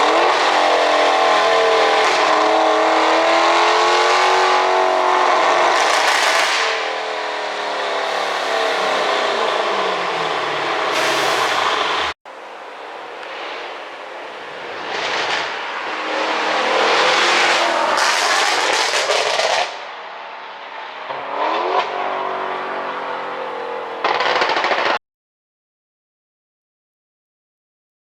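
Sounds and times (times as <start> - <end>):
car exhaust revving: 0.0 - 19.8, 21.2 - 25.0
exhaust pops and crackles: 12.4 - 16.2, 17.9 - 19.8, 24.0 - 25.0.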